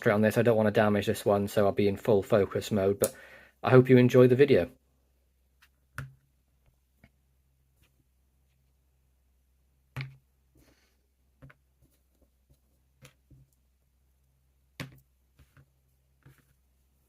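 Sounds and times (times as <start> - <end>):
soft rustle: 10.6 - 14.3.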